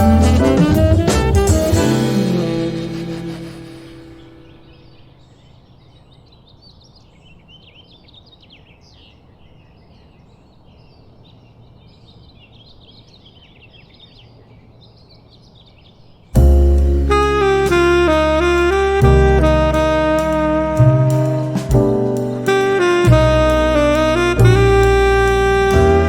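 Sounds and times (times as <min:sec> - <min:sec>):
saxophone music: 0:00.0 - 0:04.8, 0:16.4 - 0:26.0
birds chirping: 0:01.7 - 0:17.7
low background rumble: 0:16.4 - 0:26.0.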